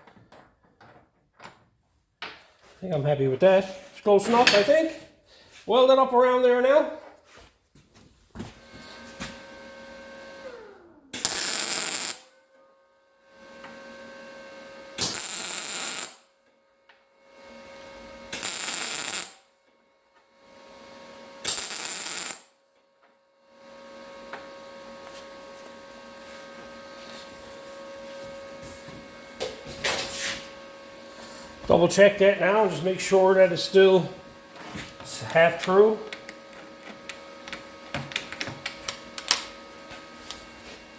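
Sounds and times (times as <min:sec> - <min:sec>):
arc welding bursts: 0:11.2 - 0:12.3, 0:15.0 - 0:16.2, 0:18.3 - 0:19.4, 0:21.4 - 0:22.5
electrical hum: 0:23.8 - 0:40.9.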